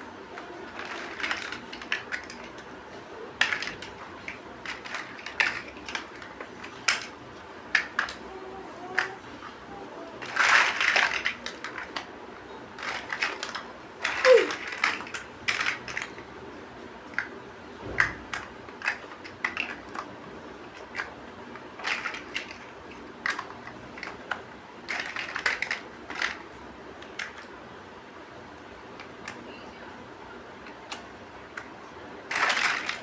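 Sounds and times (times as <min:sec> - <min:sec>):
plastic bricks clicking and rattling: 0:00.4 - 0:09.2, 0:10.0 - 0:16.3, 0:18.0 - 0:27.5, 0:32.3 - 0:33.0.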